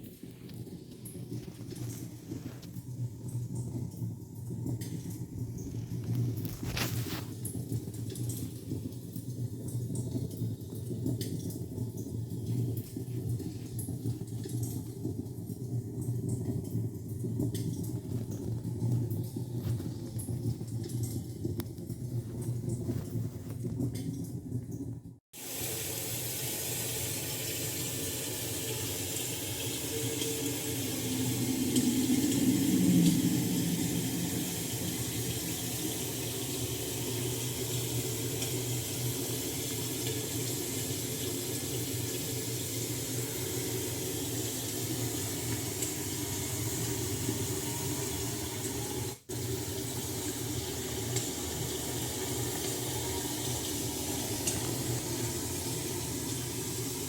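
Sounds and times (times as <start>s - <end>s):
rushing water: 27.4s - 48.8s.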